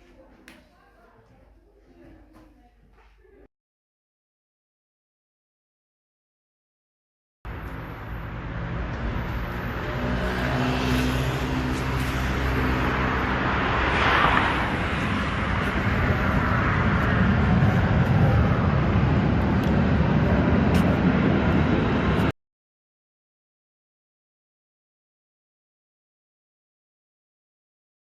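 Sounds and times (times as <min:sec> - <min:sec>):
rushing swell: 0:08.2 - 0:22.3.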